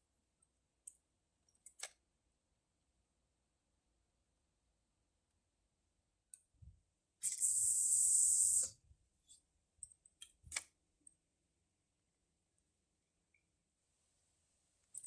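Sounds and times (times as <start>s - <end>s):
fishing reel clicks: 7.2s - 8.7s
fishing line hissing off reel: 7.2s - 8.8s.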